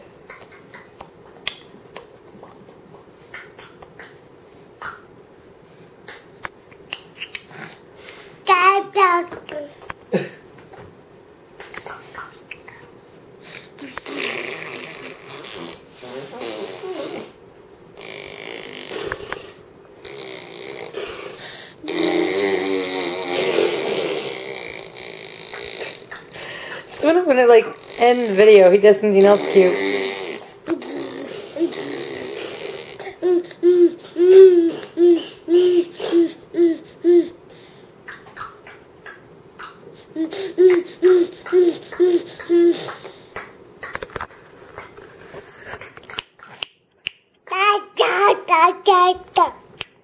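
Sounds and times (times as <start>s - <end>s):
faint steady hum: 0.0s - 50.0s
baby eating with wet smacks: 11.6s - 12.9s
baby grunting and babbling: 13.8s - 17.4s, 20.0s - 26.3s, 29.2s - 37.4s, 40.1s - 43.2s, 47.5s - 49.5s.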